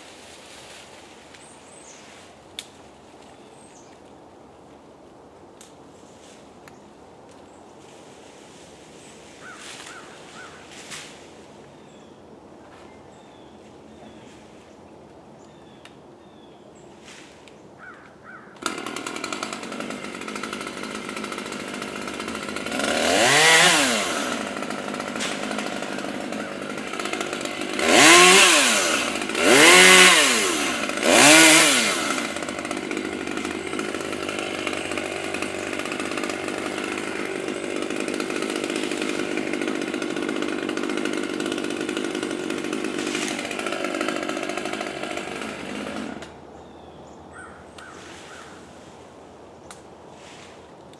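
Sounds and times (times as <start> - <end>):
chainsaw revving: 18.6 - 46.4.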